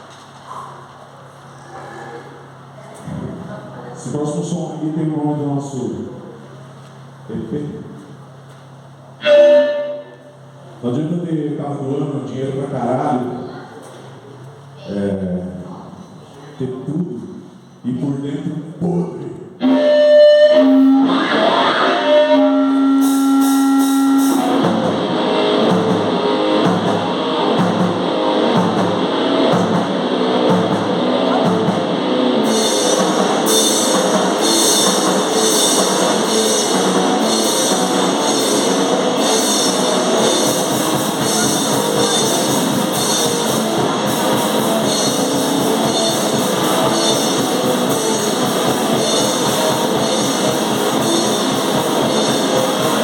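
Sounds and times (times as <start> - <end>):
distorted guitars: 9.2 - 10.6, 19.6 - 53.0
held guitar note ringing: 9.2 - 10.7, 19.6 - 53.0
heavy cymbal wash: 9.2 - 11.1, 19.6 - 53.0
drums: 19.6 - 53.0.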